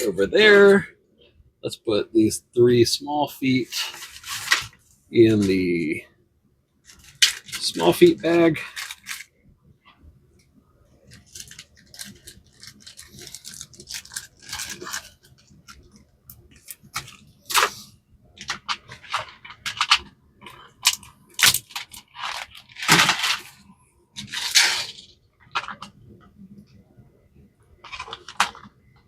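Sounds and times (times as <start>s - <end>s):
plastic bag crinkling: 6.8s - 9.3s, 11.0s - 17.8s, 18.5s - 25.9s.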